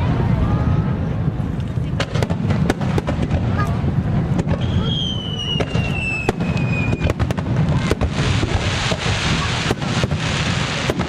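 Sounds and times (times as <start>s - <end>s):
dense crackling hiss: 0.0s - 11.0s
firework bangs and cracks: 0.0s - 11.0s
whistling firework shell: 4.4s - 8.6s.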